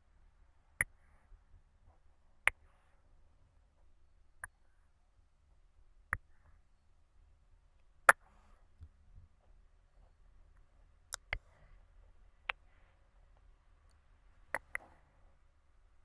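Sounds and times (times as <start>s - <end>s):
mouth clicks: 11.1s - 11.5s, 14.5s - 15.0s
faint breathing: 11.4s - 13.3s.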